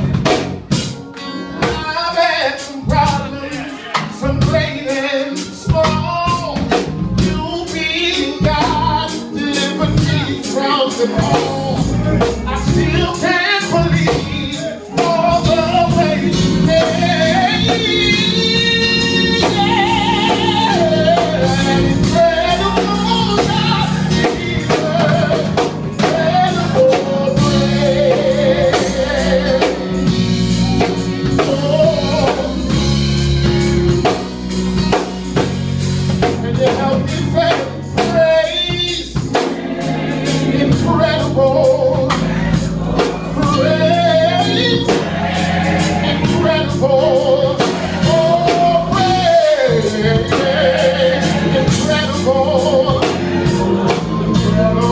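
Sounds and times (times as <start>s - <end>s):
drum kit beat: 0.0s - 54.9s
sung vocals: 1.6s - 32.9s, 36.2s - 54.9s.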